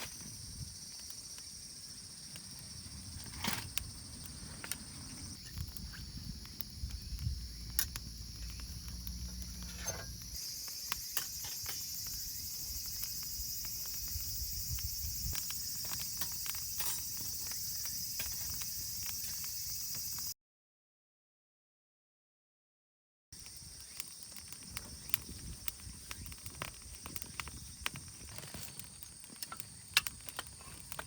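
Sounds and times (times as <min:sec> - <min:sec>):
high-pitched insect chorus: 0:00.0 - 0:20.3, 0:23.4 - 0:31.0
small clicks and crackles: 0:23.4 - 0:31.0.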